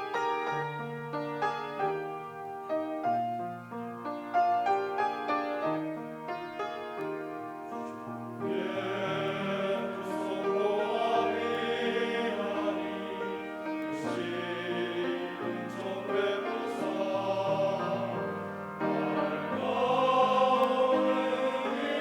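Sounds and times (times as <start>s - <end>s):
piano playing hymn: 0.0s - 22.0s
voices singing: 7.0s - 22.0s.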